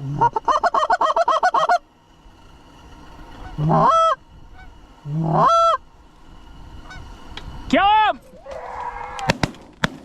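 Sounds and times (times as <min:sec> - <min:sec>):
goose honks: 0:03.4 - 0:05.8, 0:06.8 - 0:07.0.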